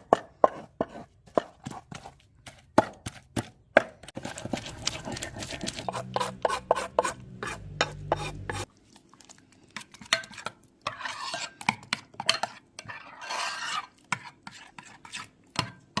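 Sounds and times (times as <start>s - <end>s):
spoon stirring in a bowl: 4.0s - 16.0s.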